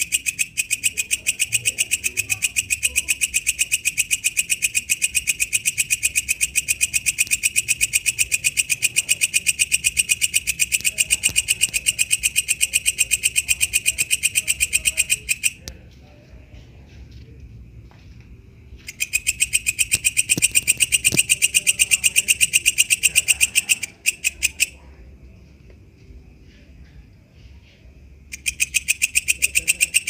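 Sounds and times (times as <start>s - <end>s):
katydid chirping: 0.0s - 15.8s, 18.8s - 24.9s, 28.3s - 30.0s.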